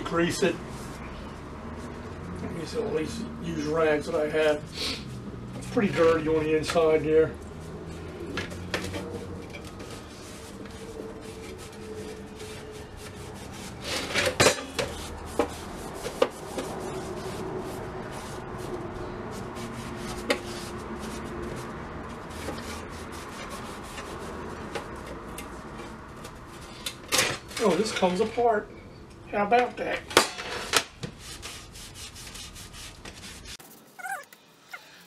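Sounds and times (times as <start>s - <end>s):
rag scrubbing and rubbing: 7.6s - 26.6s, 31.1s - 33.8s.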